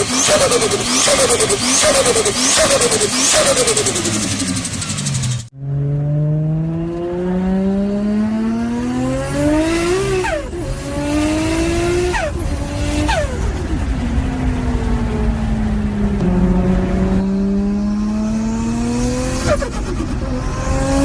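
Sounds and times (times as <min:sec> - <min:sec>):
car engine accelerating: 0:00.0 - 0:21.0.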